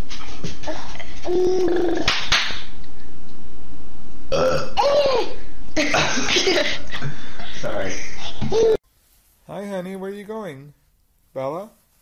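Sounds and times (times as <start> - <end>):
person burping loudly: 4.3 - 5.4.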